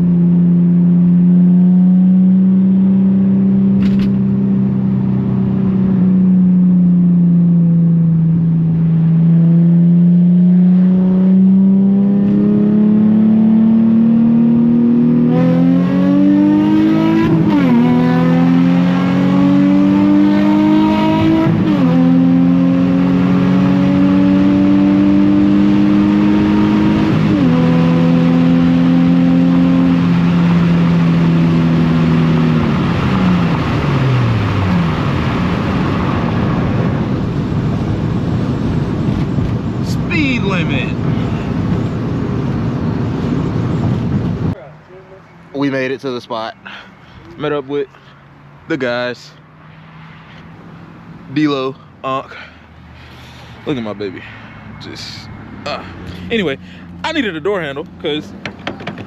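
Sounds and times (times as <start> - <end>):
car engine accelerating through gears: 0.0 - 45.6.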